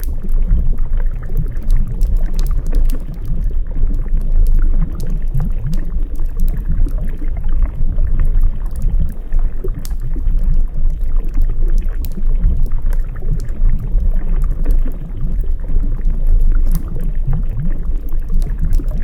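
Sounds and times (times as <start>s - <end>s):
water sloshing and gurgling: 0.0s - 19.0s
wood fire crackling: 0.0s - 19.0s.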